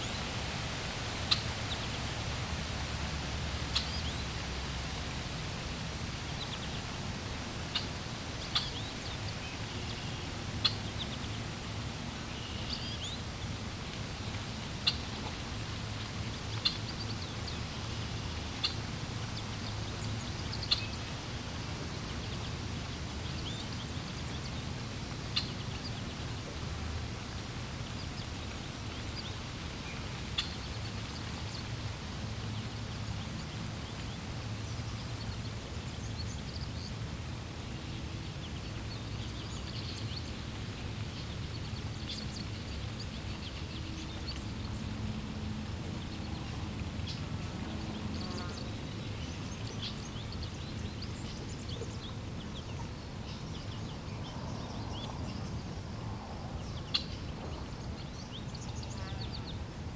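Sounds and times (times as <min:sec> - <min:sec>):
birds chirping: 0:00.0 - 0:02.4
flowing water: 0:00.0 - 0:59.9.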